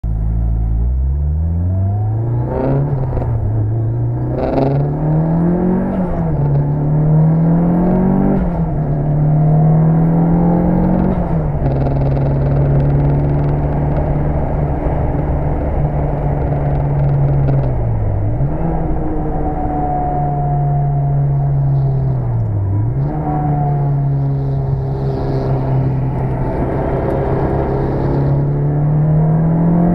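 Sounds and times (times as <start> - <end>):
car engine accelerating hard: 0.5 - 29.9
sharp exhaust cracks on shifts: 11.6 - 17.9.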